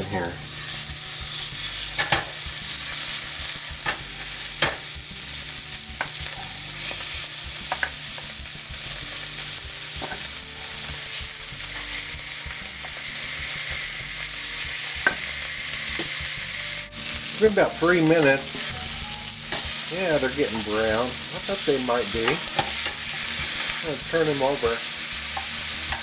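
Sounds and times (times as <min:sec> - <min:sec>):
steaks sizzling in a pan: 0:00.0 - 0:26.0.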